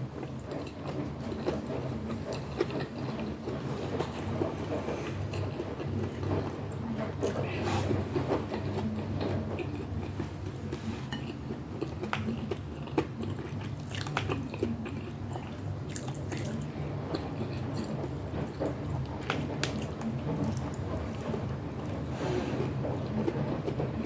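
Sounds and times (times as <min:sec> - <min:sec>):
wet chewing and smacking: 0:11.2 - 0:22.0.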